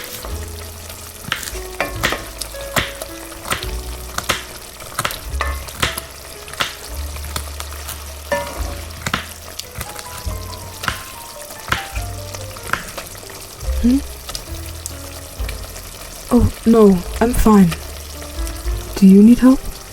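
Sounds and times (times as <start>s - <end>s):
food sizzling in a frying pan: 0.0s - 19.9s
soft background music: 0.0s - 19.9s
utensil knocking against pan: 1.3s - 6.9s.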